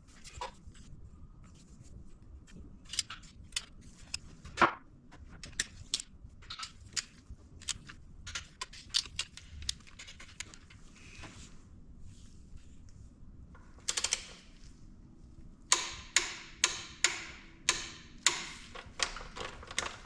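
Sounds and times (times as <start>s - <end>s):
hand tools clicking on bolts: 15.7s - 20.0s.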